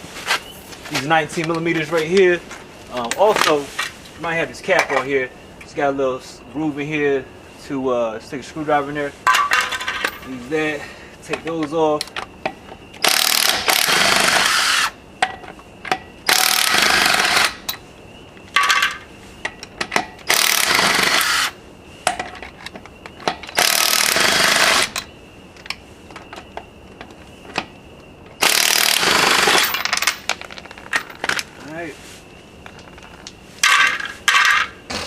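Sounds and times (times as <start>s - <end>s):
impact wrench rattling: 19.8s - 21.5s, 28.4s - 31.4s.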